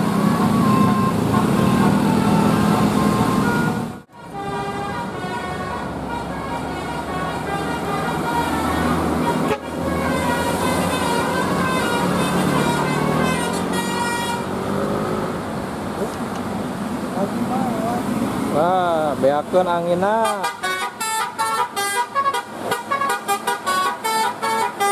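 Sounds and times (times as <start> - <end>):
bus noise: 0.0 - 24.9
musical air horn tooting: 0.1 - 14.6, 20.2 - 24.9.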